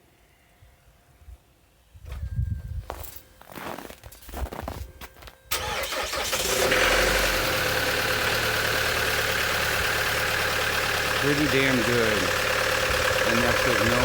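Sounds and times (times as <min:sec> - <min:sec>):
diesel engine idling: 0:05.5 - 0:14.0
starter motor cranking: 0:05.5 - 0:14.0.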